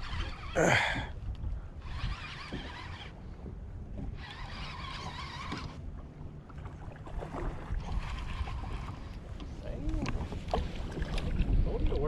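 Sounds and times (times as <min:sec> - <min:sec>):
wind rumbling on microphone: 0:00.0 - 0:12.0
whirring sound: 0:01.8 - 0:03.2, 0:04.1 - 0:05.8.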